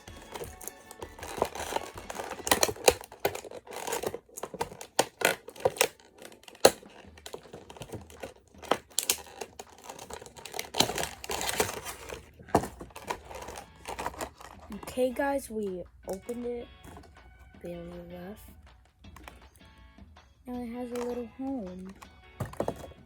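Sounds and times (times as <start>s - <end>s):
packaging being torn open: 0.0s - 14.8s.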